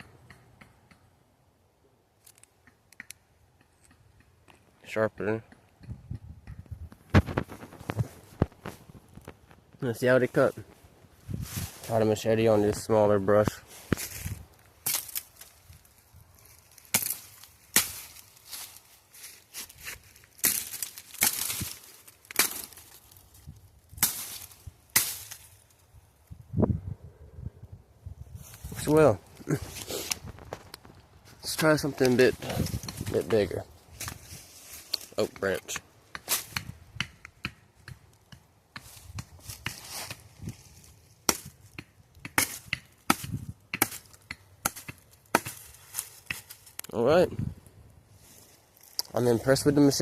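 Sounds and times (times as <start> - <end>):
machete chopping brush: 13.4 - 15.6, 16.7 - 18.9, 19.5 - 23.1, 23.9 - 25.6, 31.6 - 40.3, 41.2 - 46.8
machete chopping wood: 16.9 - 18.2, 20.4 - 22.8, 23.9 - 25.5, 41.2 - 46.6.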